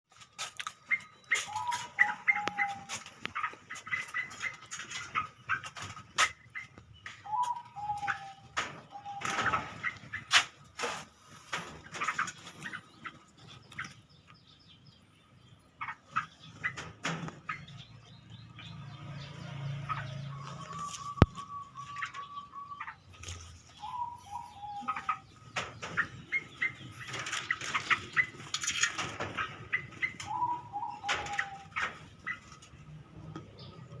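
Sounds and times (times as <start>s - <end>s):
rustling and clicking: 25.0s - 30.4s.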